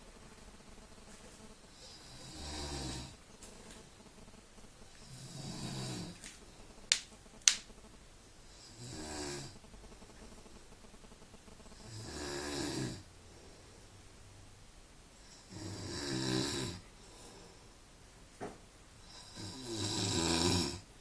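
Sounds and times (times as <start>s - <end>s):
man snoring: 1.7s - 3.2s, 5.0s - 6.2s, 8.5s - 9.6s, 11.8s - 13.1s, 15.3s - 17.3s, 19.0s - 20.8s
sharp clicks: 6.9s - 7.7s.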